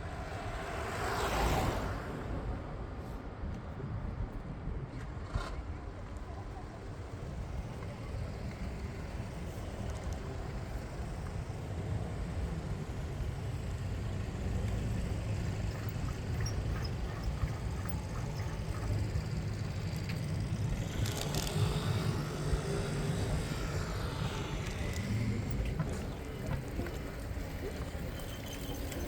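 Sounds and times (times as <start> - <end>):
city traffic: 0.0 - 29.0
wind and rolling rumble: 0.0 - 29.0
rattle of clicks: 15.9 - 22.2.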